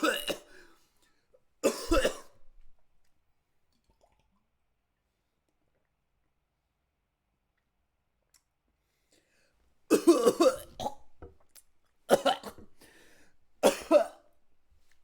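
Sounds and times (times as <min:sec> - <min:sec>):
person coughing: 0:00.0 - 0:00.6, 0:01.6 - 0:02.4, 0:09.9 - 0:11.0, 0:13.6 - 0:14.2.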